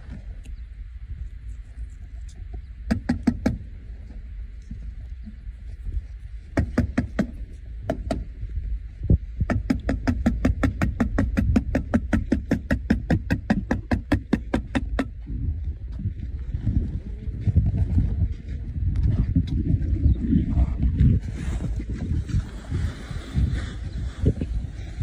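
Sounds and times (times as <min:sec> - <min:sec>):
nails driven into roof shingles: 0:09.5 - 0:15.1.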